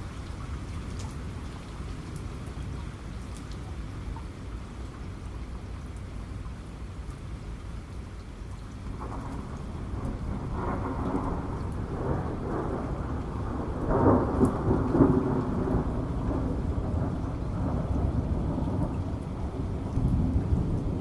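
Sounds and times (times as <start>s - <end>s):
steady rain: 0.0s - 21.0s
rolling rumble of thunder: 8.9s - 21.0s.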